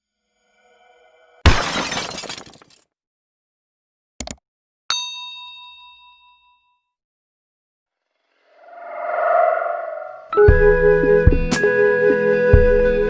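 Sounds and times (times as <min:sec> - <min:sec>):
glass breaking crash: 0:01.4 - 0:02.8.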